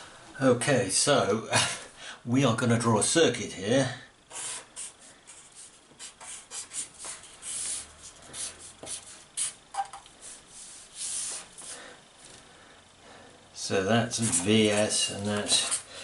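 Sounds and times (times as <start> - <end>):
pen scratching on paper: 4.8 - 9.6, 10.2 - 11.5.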